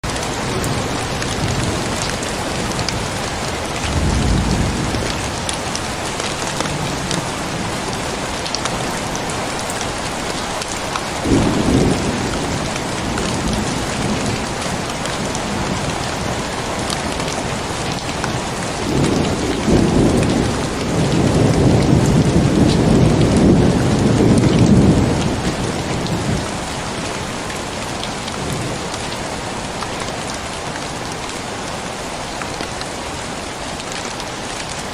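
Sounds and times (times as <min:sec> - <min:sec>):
thunder rumbling: 0:00.0 - 0:09.6, 0:11.1 - 0:27.3
heavy rain: 0:00.0 - 0:34.9
thunder clap: 0:03.8 - 0:07.9, 0:11.2 - 0:15.8.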